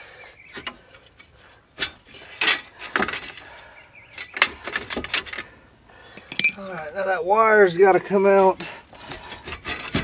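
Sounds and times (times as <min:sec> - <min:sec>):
metallic clinks and knocks: 0:06.2 - 0:06.7.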